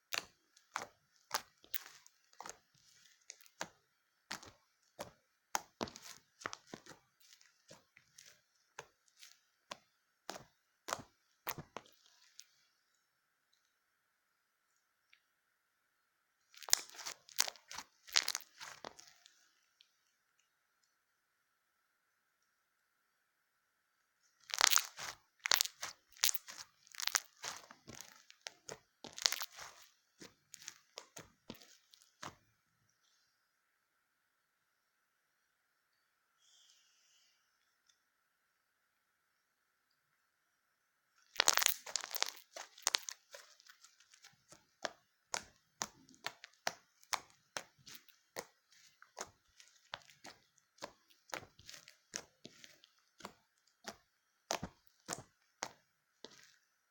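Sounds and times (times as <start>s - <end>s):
crunchy slime crackling: 0.0s - 12.6s, 16.5s - 19.5s, 24.4s - 32.4s, 41.2s - 56.9s.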